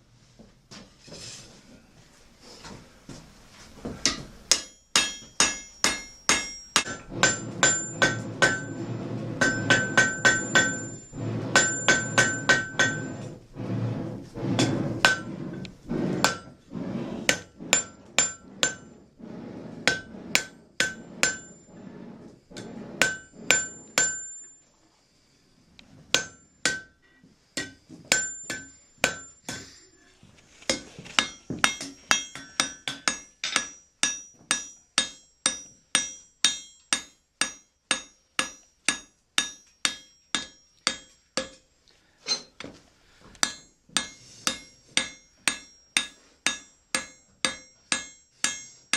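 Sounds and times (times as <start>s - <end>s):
hammer striking iron on anvil: 4.0s - 8.8s, 9.4s - 11.0s, 11.6s - 13.2s, 17.3s - 18.8s, 19.9s - 21.5s, 23.0s - 24.6s, 26.2s - 27.0s, 27.6s - 29.8s, 30.7s - 41.6s, 43.4s - 48.9s
low rumble: 6.9s - 10.0s, 12.8s - 16.2s.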